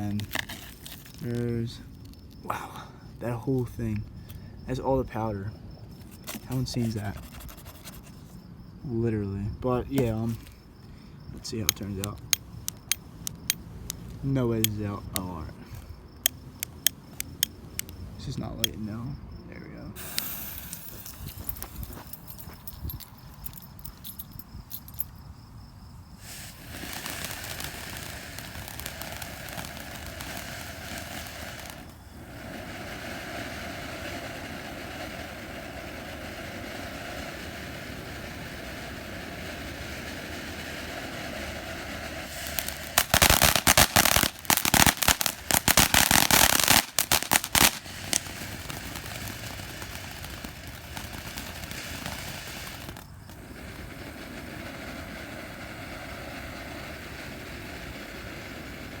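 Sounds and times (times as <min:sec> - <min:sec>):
loud crackling pops: 0:11.4 - 0:18.8, 0:20.0 - 0:21.9, 0:26.2 - 0:59.0
fountain firework hissing: 0:20.0 - 0:21.8, 0:26.1 - 0:59.0.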